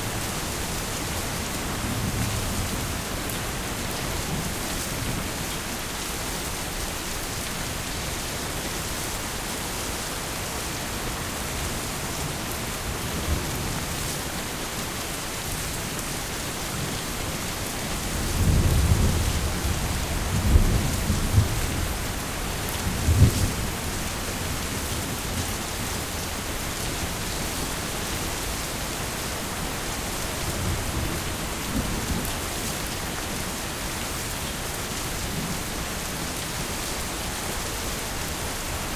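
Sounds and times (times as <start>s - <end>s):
heavy rain: 0.0s - 38.9s
thunder rumbling and cracking: 15.8s - 37.6s.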